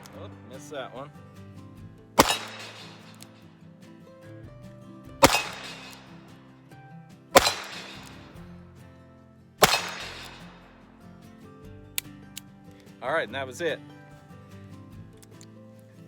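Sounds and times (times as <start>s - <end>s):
background music: 0.0s - 16.0s
revolver shots: 2.2s - 3.4s, 5.2s - 6.2s, 7.4s - 8.4s, 9.6s - 10.8s.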